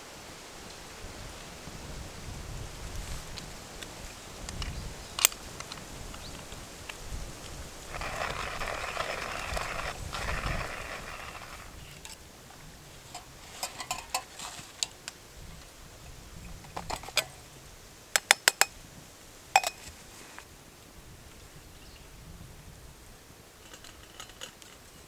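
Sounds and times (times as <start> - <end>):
rustling hissing noise: 0.0 - 18.1, 18.7 - 25.0
clicks of small hard objects: 3.8 - 12.2, 23.6 - 25.0.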